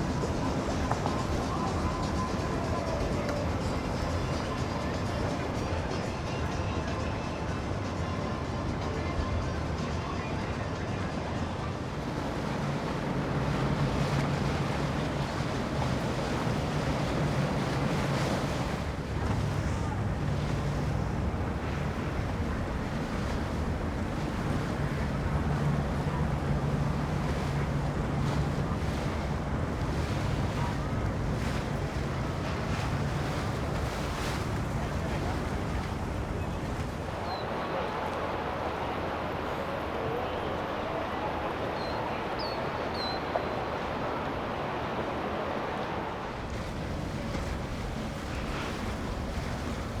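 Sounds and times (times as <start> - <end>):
motorboat engine humming: 0.0 - 50.0
rushing water: 0.0 - 50.0
wind buffeting microphone: 11.8 - 38.1, 43.0 - 50.0.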